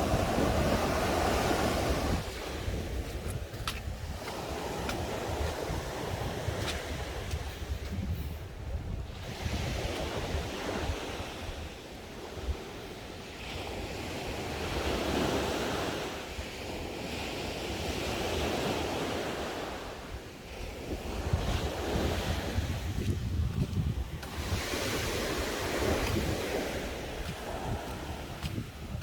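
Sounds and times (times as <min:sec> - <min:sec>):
wind rumbling on microphone: 0:00.0 - 0:12.9, 0:20.5 - 0:29.0
waves washing onto shore: 0:00.0 - 0:29.0.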